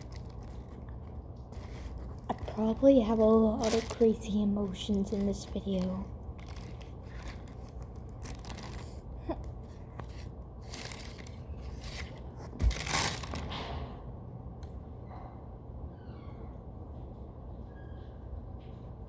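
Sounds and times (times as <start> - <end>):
plastic rustling and crinkling: 0.0 - 13.9.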